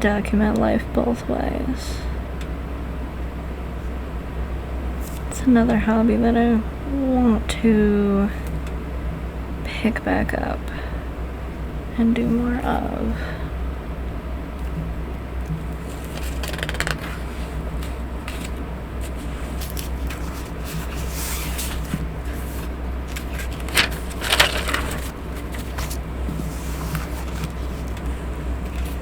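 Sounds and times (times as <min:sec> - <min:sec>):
fan humming: 0:00.0 - 0:29.0
paper rustling: 0:15.8 - 0:29.0.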